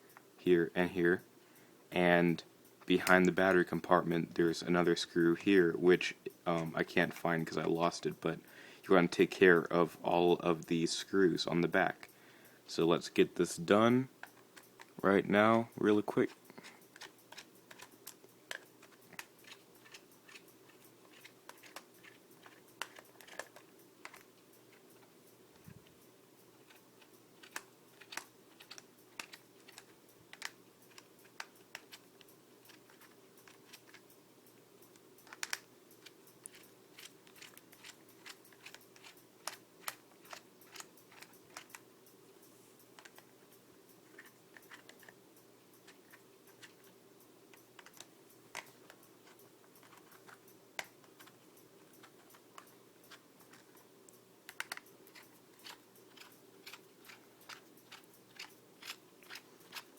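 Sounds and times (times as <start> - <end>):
faint steady hum: 0.0 - 59.9
screwdriver clicking on plastic: 47.7 - 51.4, 54.5 - 59.9.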